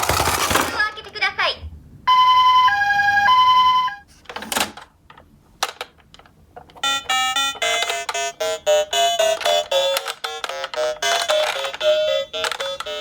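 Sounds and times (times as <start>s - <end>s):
two-tone ambulance siren: 2.1s - 4.1s
bright keyboard music: 6.8s - 13.0s.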